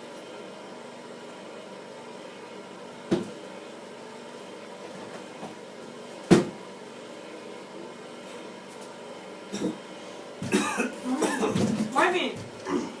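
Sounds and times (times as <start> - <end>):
steady low hum: 0.0 - 13.0
man coughing: 10.4 - 11.6.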